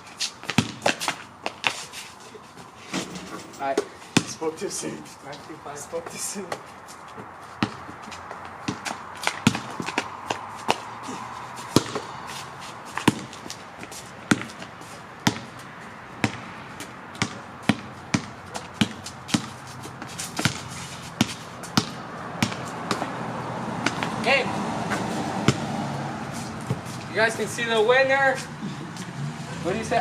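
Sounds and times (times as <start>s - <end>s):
basketball bouncing: 0.4s - 1.7s, 3.8s - 4.4s, 7.6s - 10.8s, 11.7s - 12.2s, 13.0s - 23.2s, 23.8s - 24.2s, 24.9s - 25.8s.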